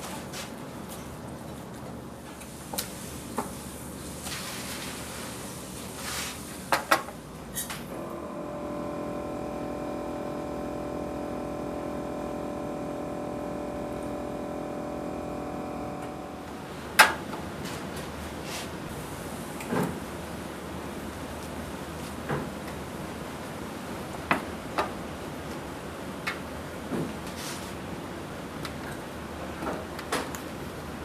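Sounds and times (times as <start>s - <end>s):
small electric appliance humming: 7.9s - 16.8s.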